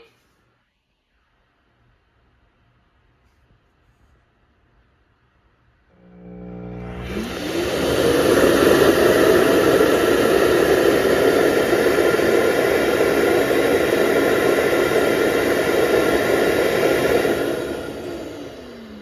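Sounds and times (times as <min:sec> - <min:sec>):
suction motor running: 0:06.0 - 0:19.0.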